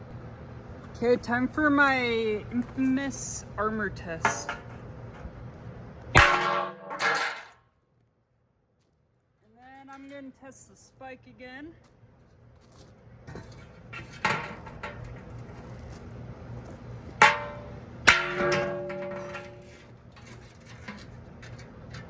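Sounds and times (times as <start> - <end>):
axe striking metal target: 6.2 - 7.5, 17.2 - 19.9
metallic ring: 17.2 - 21.0.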